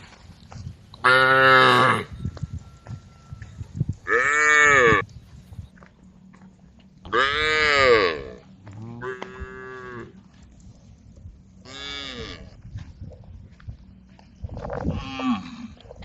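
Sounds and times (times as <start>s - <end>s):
cows mooing: 1.0s - 2.2s, 4.0s - 5.1s, 7.0s - 10.3s, 11.6s - 12.5s.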